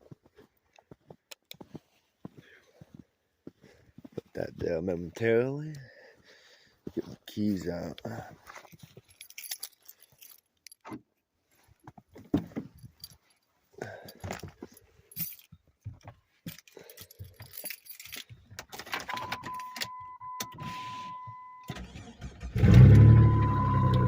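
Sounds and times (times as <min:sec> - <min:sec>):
keys jangling: 0:08.5 - 0:10.8, 0:12.7 - 0:19.9
car engine starting and idling: 0:20.2 - 0:24.0
electronic chime tone: 0:23.1 - 0:24.0.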